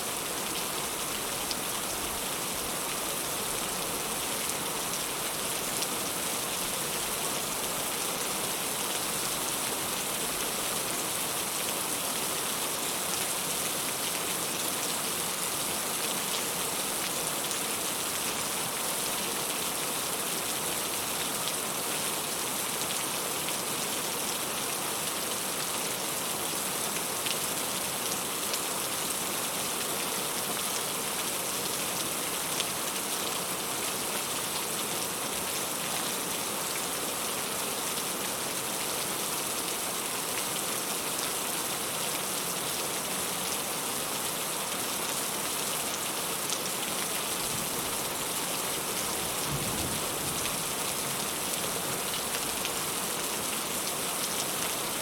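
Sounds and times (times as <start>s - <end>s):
heavy rain falling: 0.1s - 55.0s.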